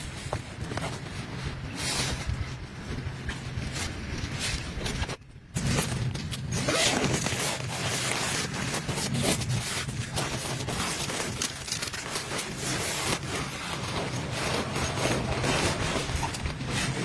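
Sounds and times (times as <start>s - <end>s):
tent zipper rasping: 3.7s - 17.0s.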